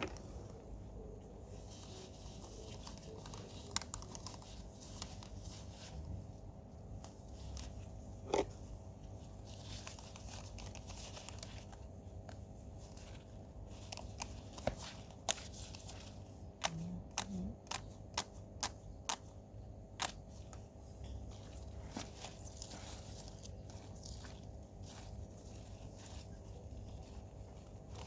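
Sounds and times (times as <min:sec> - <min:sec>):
soil rustling and crunching: 0:20.0 - 0:28.0.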